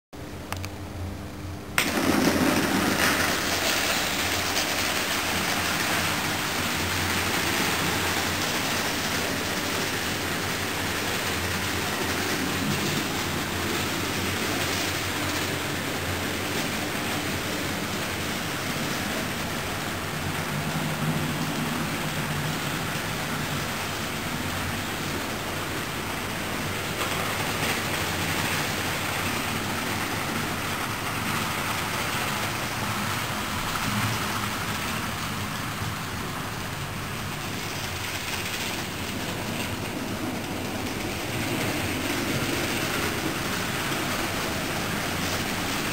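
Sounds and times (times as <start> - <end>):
model train running: 1.8 - 45.9.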